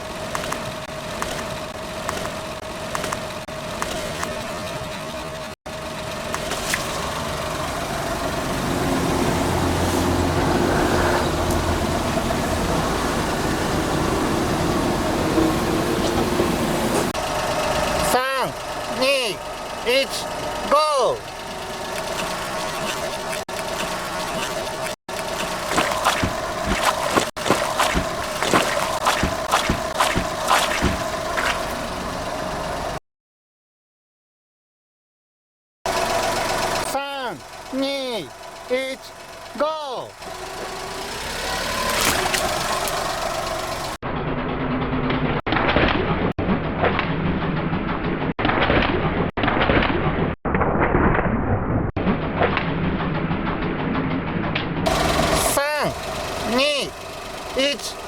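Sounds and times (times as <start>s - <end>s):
water balloons popping: 0.0s - 4.4s, 6.3s - 7.1s, 21.9s - 31.8s, 41.7s - 43.0s
car engine running: 0.0s - 33.0s, 35.9s - 44.0s, 54.9s - 58.0s.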